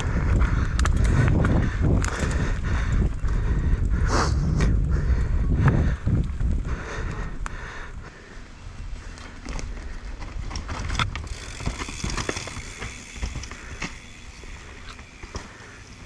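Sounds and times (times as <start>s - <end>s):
bike clacking over rocks: 9.3s - 16.0s
tyres rumbling on dirt: 9.3s - 16.0s.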